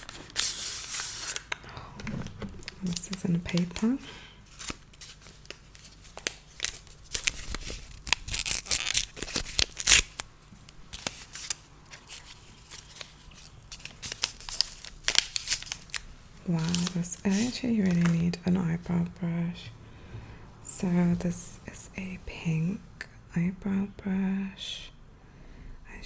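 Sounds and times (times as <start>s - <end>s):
paper wrapping rustling and tearing: 0.0s - 10.3s, 10.9s - 18.2s.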